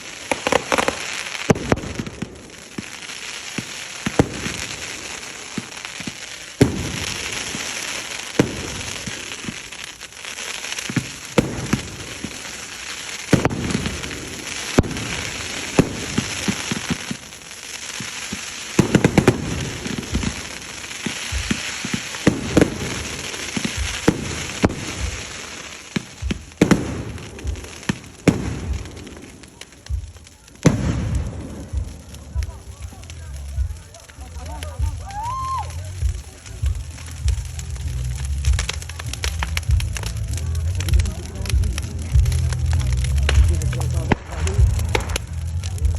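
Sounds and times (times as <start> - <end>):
bonfire cracking and popping: 0.0 - 45.9
hiss of flame: 0.0 - 45.9.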